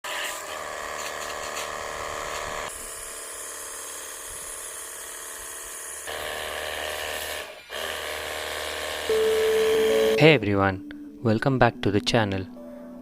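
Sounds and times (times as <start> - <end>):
small electric motor whirring: 0.0 - 10.1.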